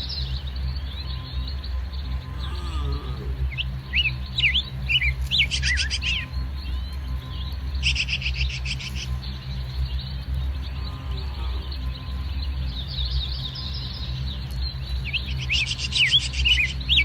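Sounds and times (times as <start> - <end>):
small birds chirping: 0.0 - 17.0
steady low rumble: 0.0 - 17.0.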